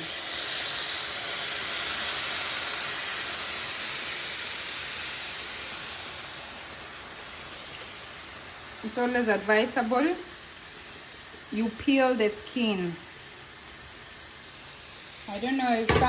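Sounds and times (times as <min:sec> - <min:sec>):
hissing sizzle in hot pan: 0:00.0 - 0:16.0.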